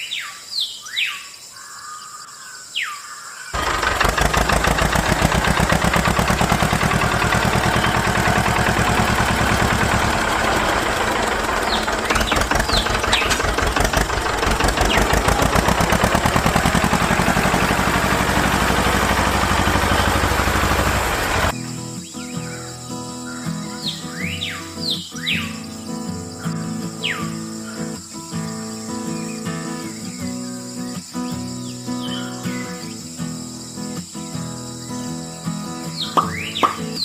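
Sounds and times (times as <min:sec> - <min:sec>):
small engine running: 0:03.6 - 0:21.6.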